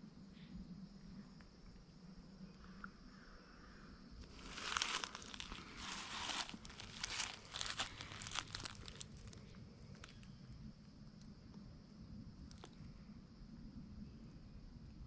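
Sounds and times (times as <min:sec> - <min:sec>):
footsteps crunching dry leaves: 0:04.2 - 0:09.4.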